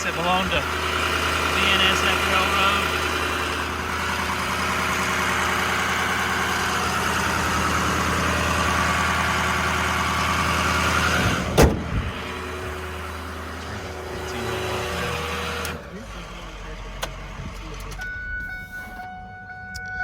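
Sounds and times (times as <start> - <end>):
diesel engine idling: 0.0 - 20.0
door slamming: 11.5 - 11.9.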